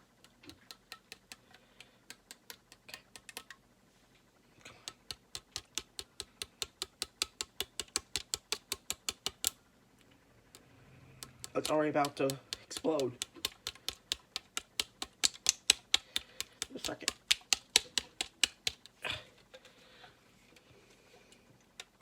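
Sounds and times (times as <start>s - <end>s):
rapid sharp taps: 4.9s - 9.6s, 11.2s - 18.9s.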